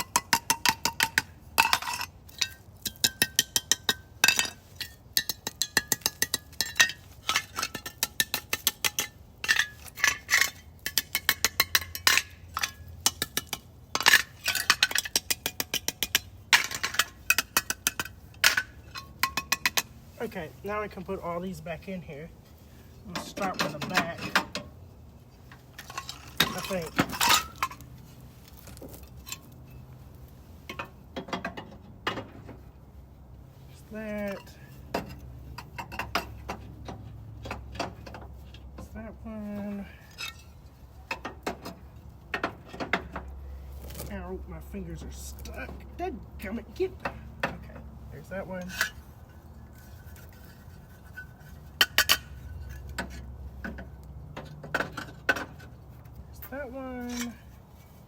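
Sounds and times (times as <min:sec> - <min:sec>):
metal parts clinking and scraping: 0:00.0 - 0:20.6, 0:21.7 - 0:29.9, 0:39.6 - 0:43.2, 0:46.8 - 0:58.0.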